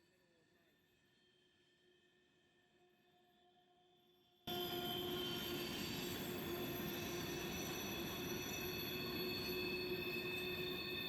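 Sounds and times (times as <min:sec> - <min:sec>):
rumble of rolling train cars: 0:04.5 - 0:11.0
train wheels squealing: 0:04.5 - 0:11.0.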